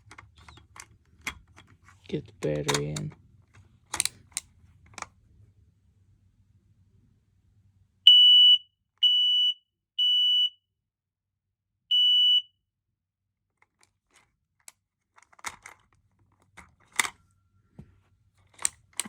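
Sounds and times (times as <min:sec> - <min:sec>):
smoke alarm high-pitched beeps: 0:08.1 - 0:10.6, 0:11.9 - 0:12.5.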